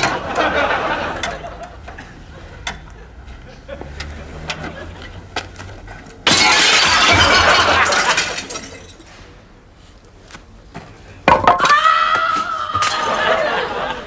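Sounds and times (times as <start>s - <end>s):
glass shattering: 6.2s - 9.2s, 12.4s - 13.4s.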